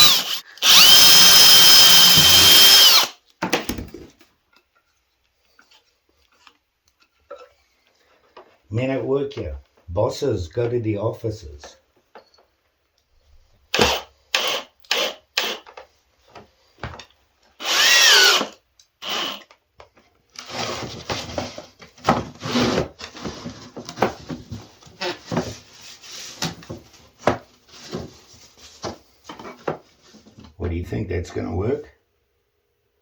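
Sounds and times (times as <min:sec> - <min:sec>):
power drill driving screws: 0:00.0 - 0:03.2, 0:13.7 - 0:15.7, 0:17.6 - 0:19.6, 0:20.4 - 0:20.8, 0:22.4 - 0:22.8.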